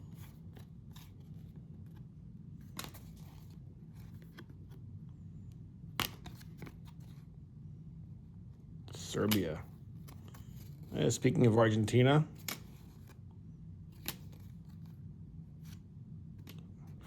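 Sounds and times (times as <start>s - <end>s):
trading cards flipped by hand: 0.0s - 4.8s, 5.9s - 7.2s, 8.9s - 11.1s, 12.3s - 13.3s, 13.9s - 15.0s, 15.6s - 17.0s
low steady hum: 0.0s - 17.0s
card snaps: 6.0s - 6.7s, 12.4s - 12.8s.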